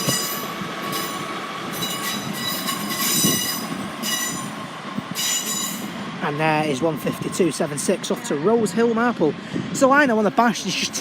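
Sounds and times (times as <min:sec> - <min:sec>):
train wheels squealing: 0:00.0 - 0:06.0
train rumbling: 0:00.0 - 0:11.0.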